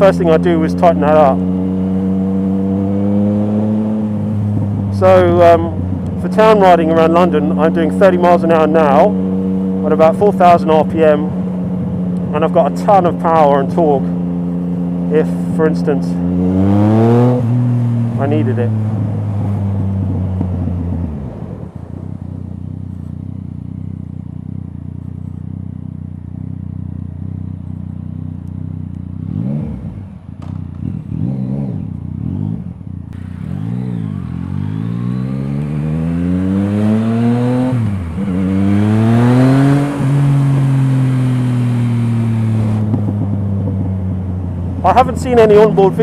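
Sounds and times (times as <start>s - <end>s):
motorcycle engine revving: 0.0s - 46.0s.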